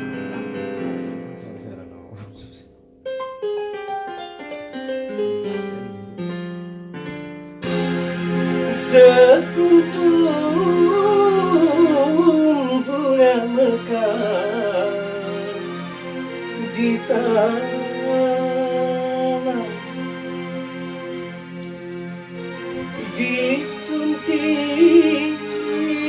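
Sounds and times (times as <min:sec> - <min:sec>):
keyboard piano notes: 0:00.0 - 0:26.0
wavering lead melody: 0:00.0 - 0:26.0
backing chords: 0:07.6 - 0:26.0.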